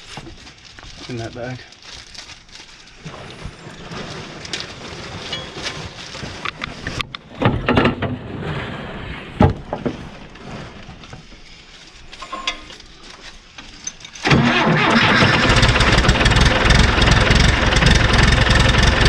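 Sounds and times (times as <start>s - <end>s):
bulldozer diesel engine running: 14.2s - 19.0s.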